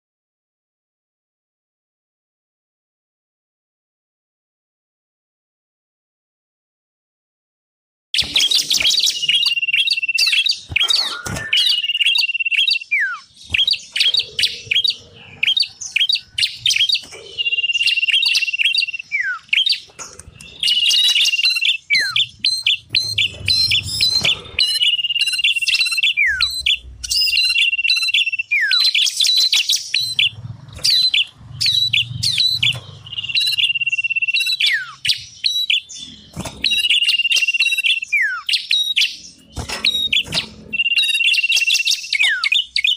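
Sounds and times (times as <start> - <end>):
rapid high bird chirps: 8.2 - 42.9
songbirds whistling: 8.2 - 42.9.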